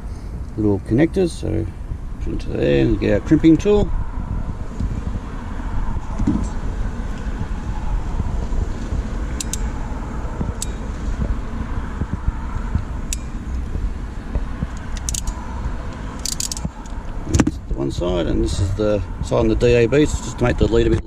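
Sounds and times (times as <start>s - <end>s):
steady low rumble: 0.0s - 21.0s.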